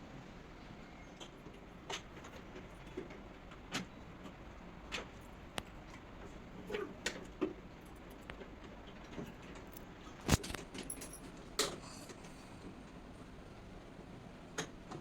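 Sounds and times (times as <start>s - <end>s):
tools and parts clicking and knocking: 9.1s - 11.8s.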